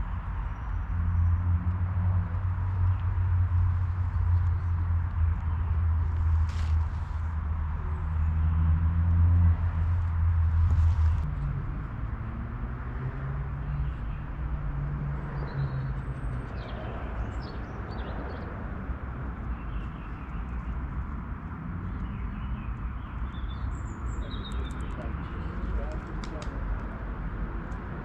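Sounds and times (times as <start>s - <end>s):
bird chirps: 21.9s - 25.9s.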